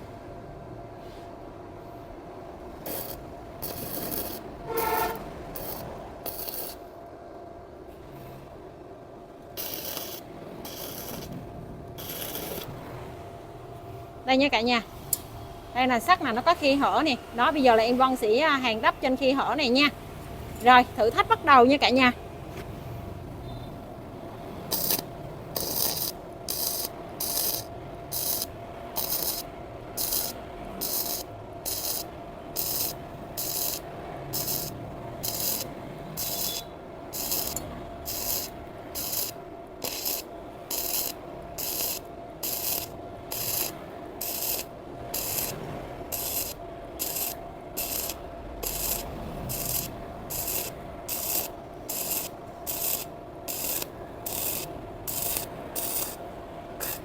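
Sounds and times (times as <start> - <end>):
welding arc crackling in bursts: 2.8 - 7.0, 9.5 - 12.9, 24.3 - 56.2, 56.8 - 57.0.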